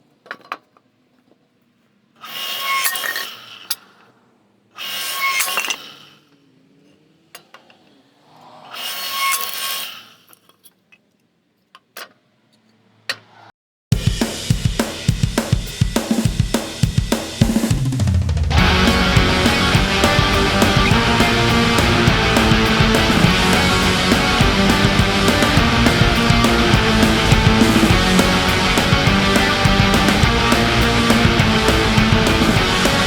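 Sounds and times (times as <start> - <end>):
heavy rock music: 17.4 - 33.0
noisy work bursts: 17.4 - 33.0.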